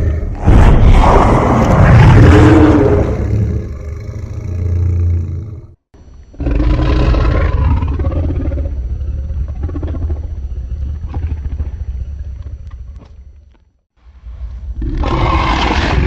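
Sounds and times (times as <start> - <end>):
monster roar: 0.0 - 5.6.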